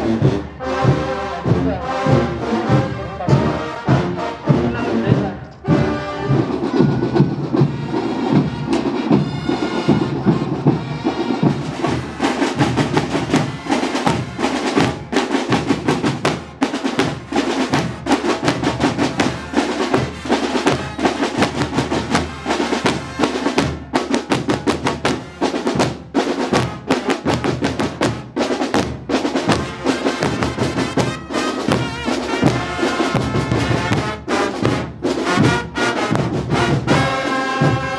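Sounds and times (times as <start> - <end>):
brass band playing: 0.0 - 37.9
drums beating: 0.0 - 37.9.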